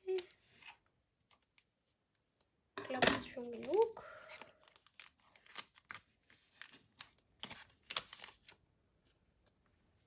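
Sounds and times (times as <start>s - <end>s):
foil wrapper crinkling and tearing: 3.4s - 8.6s.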